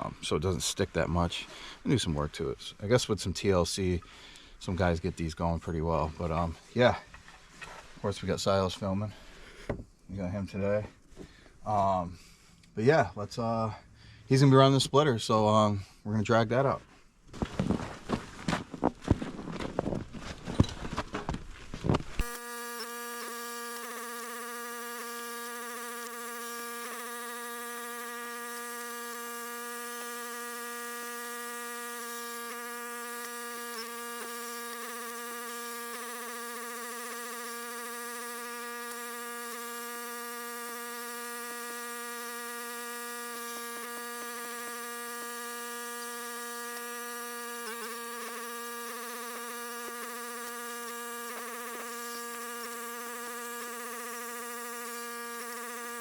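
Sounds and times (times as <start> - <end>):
machine buzzing hum: 22.2 - 56.0.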